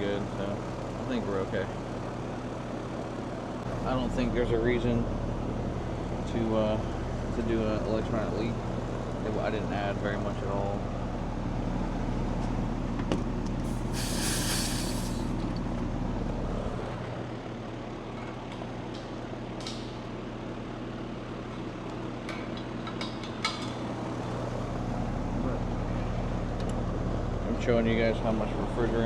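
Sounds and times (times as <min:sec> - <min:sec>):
air conditioner humming: 0:01.2 - 0:10.8, 0:13.6 - 0:17.0
refrigerant hiss: 0:13.6 - 0:15.4.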